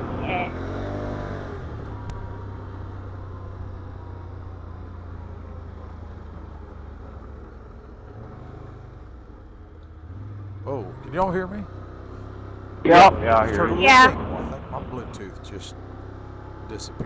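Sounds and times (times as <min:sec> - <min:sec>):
atv engine droning: 0:00.0 - 0:01.9, 0:12.9 - 0:15.3.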